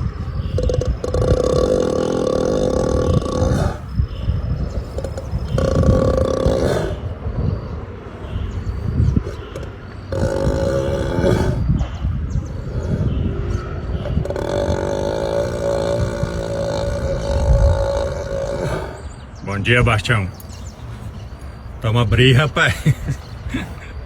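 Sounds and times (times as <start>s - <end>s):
ox snoring: 0.0s - 7.2s, 8.6s - 19.3s
low rough breathing: 0.0s - 7.4s, 8.4s - 19.4s.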